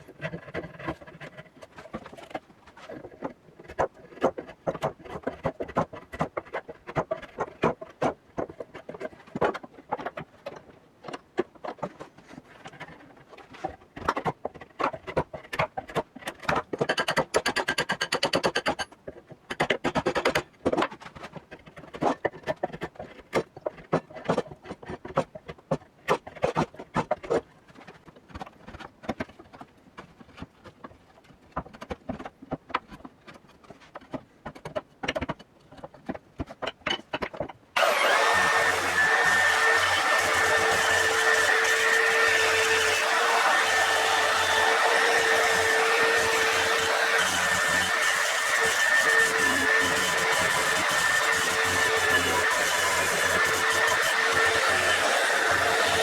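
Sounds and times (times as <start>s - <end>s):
hand tools scraping rusty iron: 37.8s - 56.0s.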